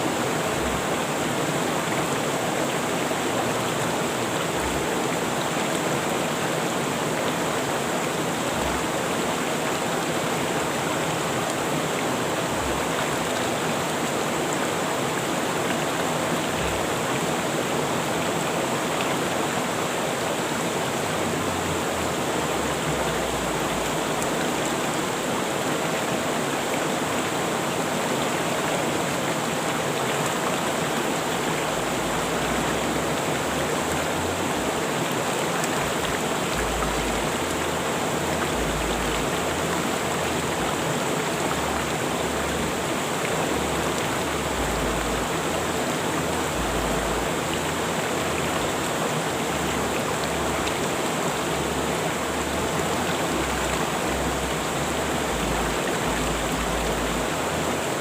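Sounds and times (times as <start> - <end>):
river water rushing over rocks: 0.0 - 58.0.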